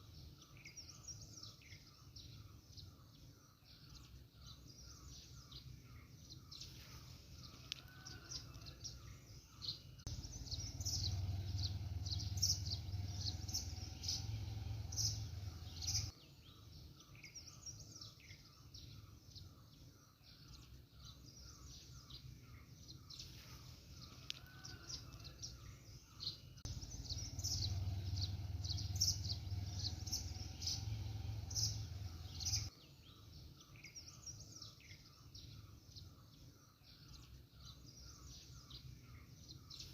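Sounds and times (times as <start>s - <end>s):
songbirds chirping: 0.0s - 39.9s
low rumble: 10.1s - 16.1s, 26.7s - 32.7s.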